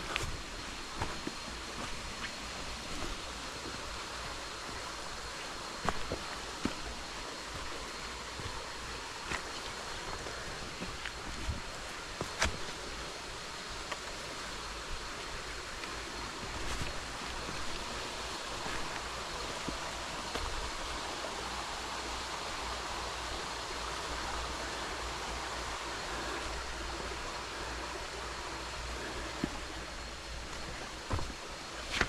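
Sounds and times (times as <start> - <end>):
creek water rushing: 0.0 - 32.0.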